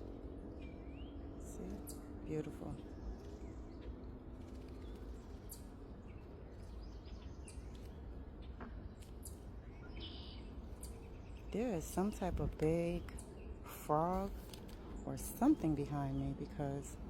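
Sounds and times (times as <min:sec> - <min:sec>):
low background rumble: 0:00.0 - 0:17.0
bird chirps: 0:04.7 - 0:12.3.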